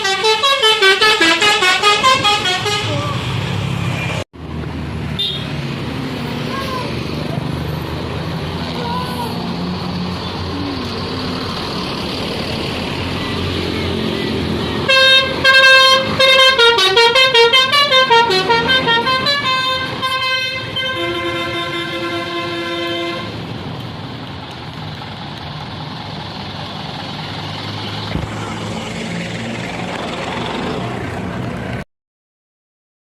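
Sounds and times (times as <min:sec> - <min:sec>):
musical bus horn tune: 0:00.0 - 0:03.3, 0:13.7 - 0:23.4
vehicle rumble: 0:00.0 - 0:31.8.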